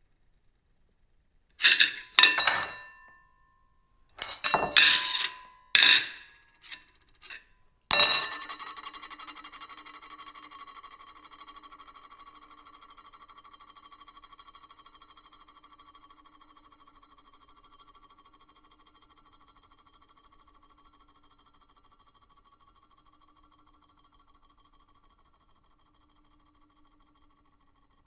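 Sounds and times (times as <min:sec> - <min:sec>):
ceramic plate clinking: 0:01.6 - 0:03.1, 0:04.2 - 0:09.0.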